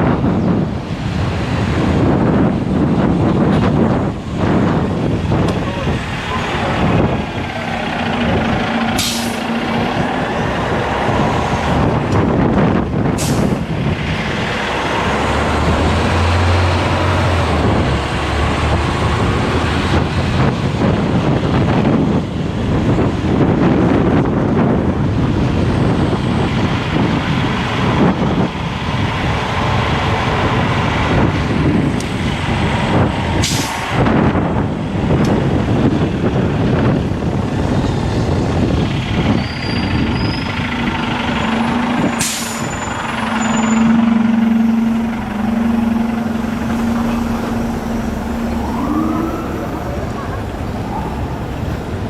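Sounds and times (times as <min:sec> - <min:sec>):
street traffic: 0:00.0 - 0:52.0
wind buffeting microphone: 0:00.0 - 0:52.0
short sharp hisses: 0:42.2 - 0:42.8.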